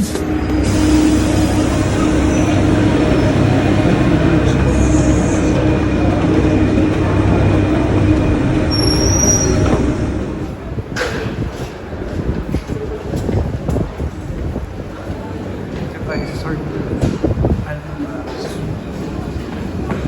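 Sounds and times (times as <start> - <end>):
rail car rumbling: 0.0 - 20.0
high wheel squeal: 0.3 - 10.6.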